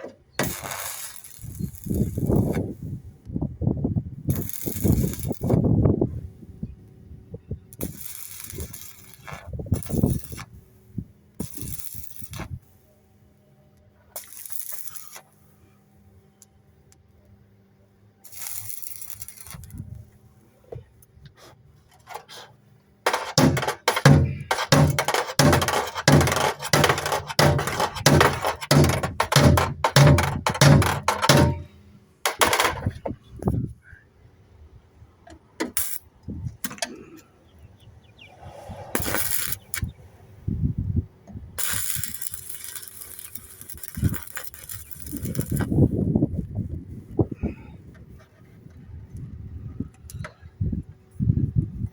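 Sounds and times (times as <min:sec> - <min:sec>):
metal clanks and clinks: 0:23.1 - 0:31.7, 0:32.3 - 0:33.0
metal knocks on steel: 0:23.1 - 0:31.7, 0:32.3 - 0:33.0.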